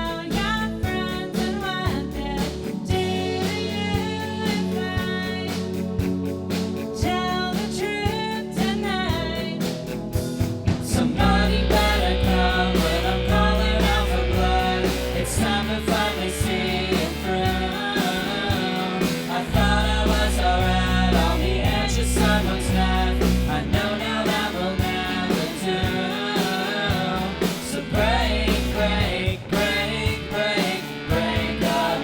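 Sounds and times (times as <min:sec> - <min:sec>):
heavy bass: 0:00.0 - 0:32.0
rock band playing live: 0:00.0 - 0:32.0
person singing: 0:11.0 - 0:32.0.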